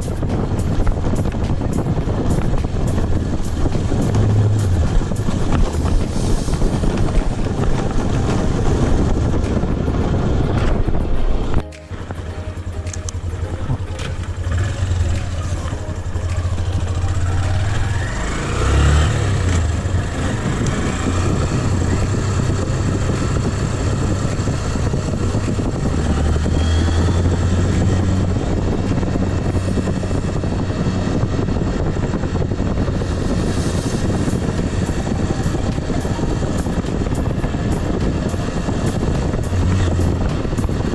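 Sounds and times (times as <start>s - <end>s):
motorcycle engine running: 0.0s - 40.9s
wind rushing over microphone: 0.0s - 40.9s.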